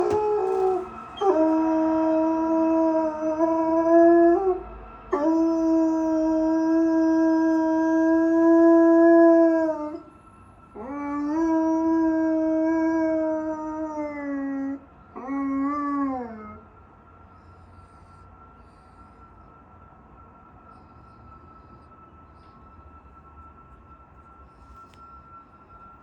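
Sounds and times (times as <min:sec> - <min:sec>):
dog howling: 0:00.0 - 0:10.1, 0:10.8 - 0:16.7.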